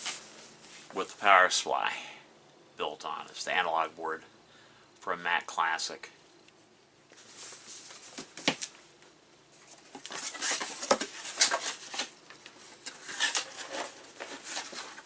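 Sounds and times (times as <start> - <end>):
rustling and scraping: 0.0 - 1.1, 6.4 - 8.9, 9.5 - 15.0.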